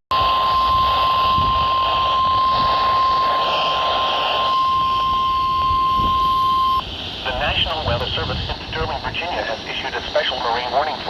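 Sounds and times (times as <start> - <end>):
steady alarm tone beep: 0.1 - 6.8
radio static hiss: 0.1 - 11.0.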